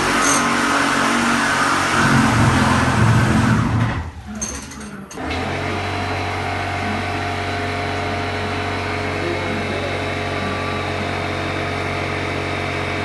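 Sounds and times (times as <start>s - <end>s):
motor engine humming: 5.0s - 13.0s.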